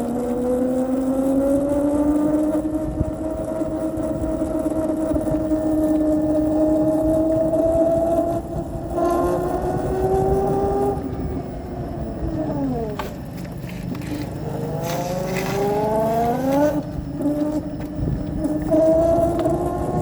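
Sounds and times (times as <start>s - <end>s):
electric scooter whine: 0.0s - 20.0s.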